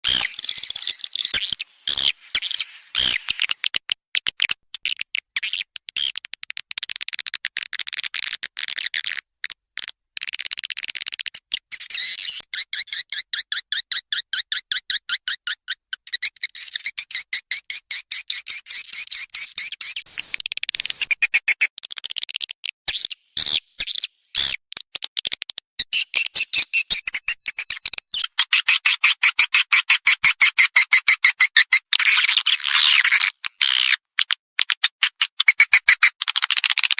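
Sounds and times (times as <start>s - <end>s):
swiftlets twittering: 0.0s - 3.8s, 20.1s - 21.7s.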